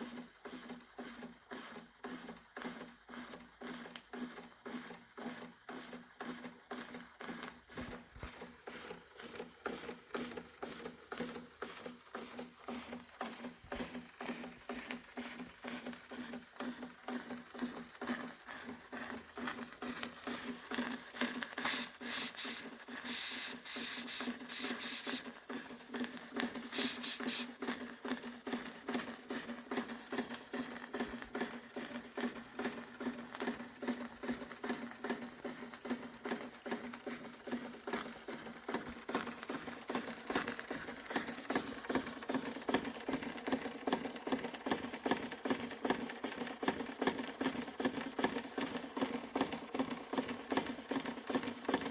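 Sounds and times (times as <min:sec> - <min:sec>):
toy steam engine chuffing: 0:09.2 - 0:33.9
steam hissing: 0:21.6 - 0:25.2, 0:26.7 - 0:27.5.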